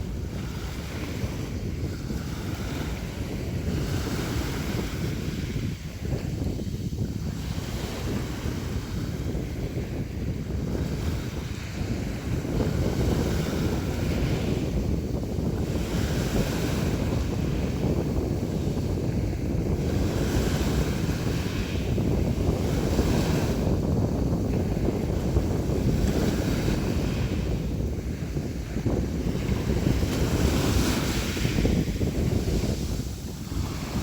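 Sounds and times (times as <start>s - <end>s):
sea waves splashing ashore: 0.0s - 34.0s
wind rumbling on microphone: 0.0s - 34.0s.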